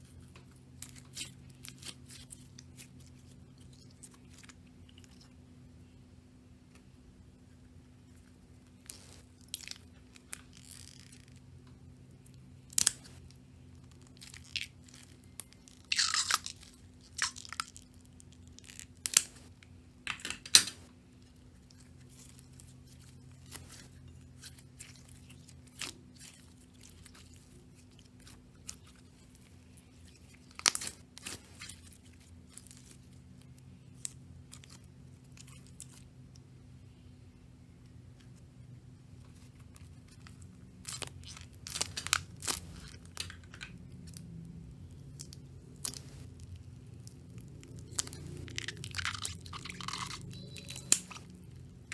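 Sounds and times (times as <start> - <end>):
slime popping and crackling: 12.2 - 19.5, 22.0 - 36.0, 40.0 - 51.9.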